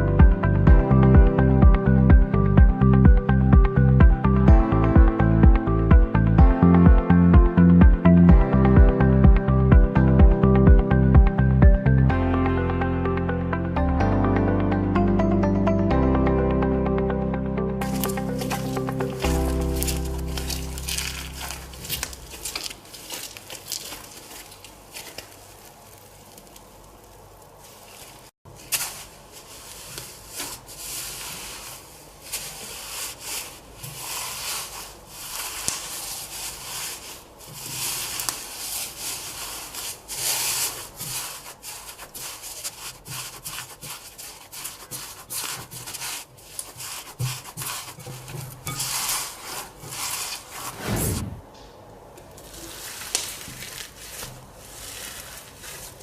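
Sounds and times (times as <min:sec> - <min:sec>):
slime squishing: 0:17.8 - 0:51.0, 0:52.3 - 0:56.0.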